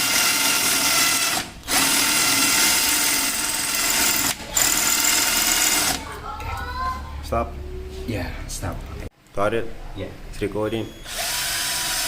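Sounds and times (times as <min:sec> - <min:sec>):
cordless drill running: 0:00.0 - 0:06.0, 0:11.1 - 0:12.0.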